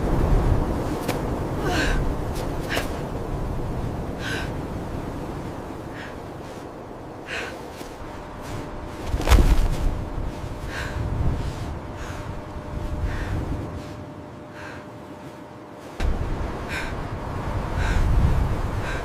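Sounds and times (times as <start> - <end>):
low rumble: 0.0 - 19.0
person breathing hard: 5.9 - 8.7, 10.5 - 15.4, 16.6 - 19.0.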